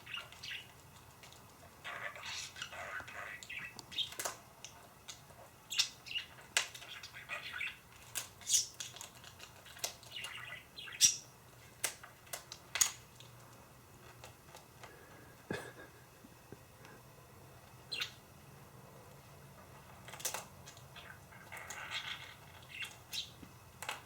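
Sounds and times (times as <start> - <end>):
budgerigar chirping: 1.8 - 4.2, 5.7 - 7.8, 10.2 - 11.3, 17.9 - 18.2, 21.0 - 23.4.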